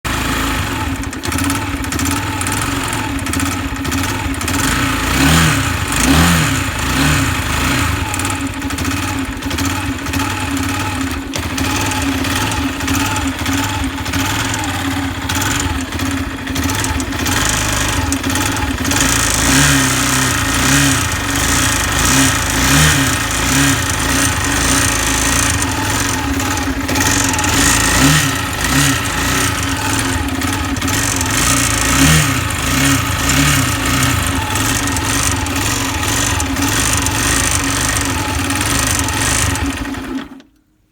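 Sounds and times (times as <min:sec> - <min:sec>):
engine knocking: 0:00.0 - 0:40.5
motorcycle engine idling with blips: 0:00.0 - 0:40.8.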